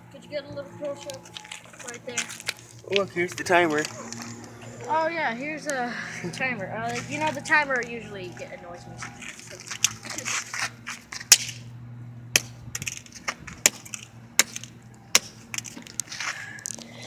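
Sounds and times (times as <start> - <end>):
rustling scraping: 0.8 - 11.3
plastic and metal parts cracking: 15.5 - 16.9.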